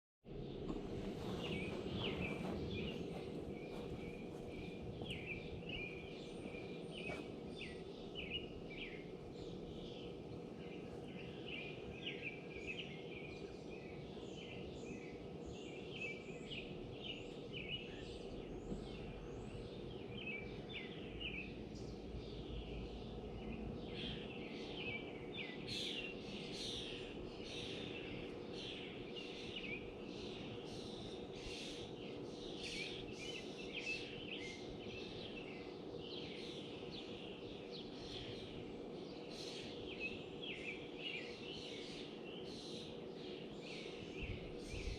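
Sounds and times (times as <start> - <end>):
low background rumble: 0.3 - 15.6
faint hum: 0.3 - 44.9
songbirds chirping: 0.3 - 44.9.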